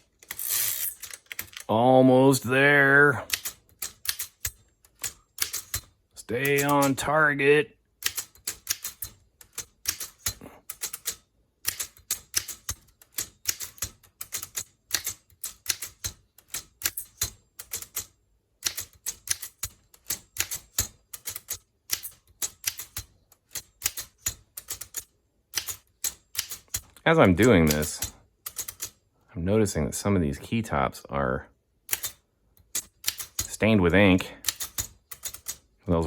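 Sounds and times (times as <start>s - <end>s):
typewriter clacking: 3.3s - 7.0s, 8.0s - 29.0s, 31.9s - 33.5s, 34.4s - 35.6s.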